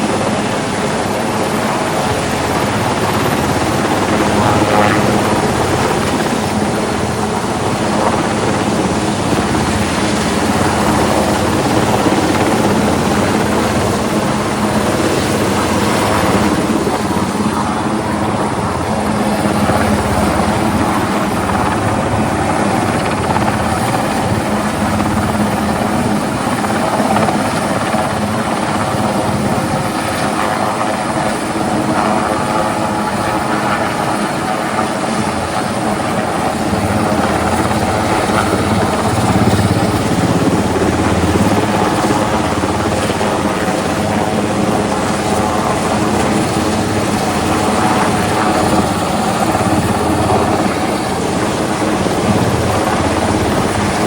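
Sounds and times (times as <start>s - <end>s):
helicopter rotor and engine: 0.0s - 54.0s.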